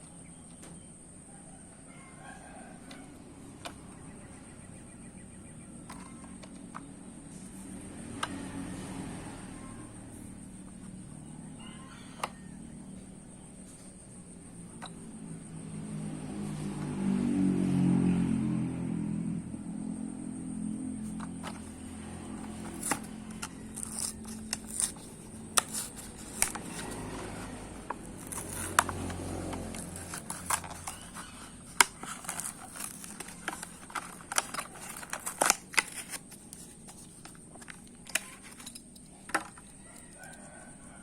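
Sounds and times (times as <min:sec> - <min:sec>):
plastic and cardboard crinkling: 0:21.0 - 0:40.6
plastic packaging clicks and snaps: 0:27.9 - 0:40.3.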